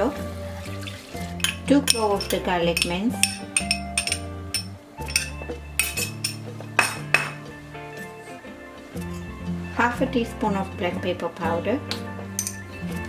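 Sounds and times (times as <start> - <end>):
background music with held notes: 0.0 - 13.0
light clinks: 1.4 - 7.4.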